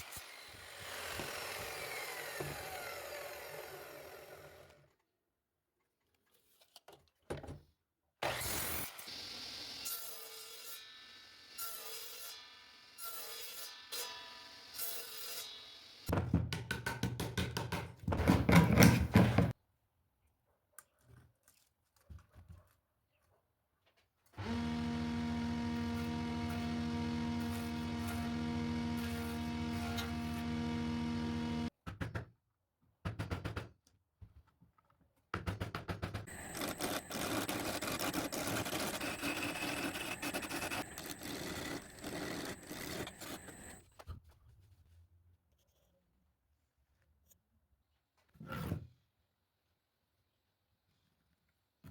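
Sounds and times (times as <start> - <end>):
electric tool humming: 24.4 - 31.7, 36.3 - 43.8.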